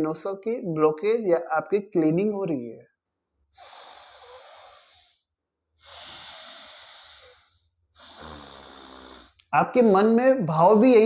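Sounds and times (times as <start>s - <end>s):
forceful nasal breaths: 3.5s - 9.5s.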